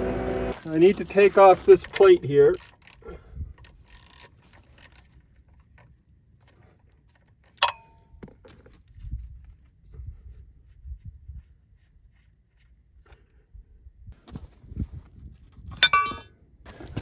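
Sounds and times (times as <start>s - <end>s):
metal parts and tools clinking: 3.6s - 8.9s, 15.5s - 16.3s
sharp ringing metal clink: 7.6s - 8.1s.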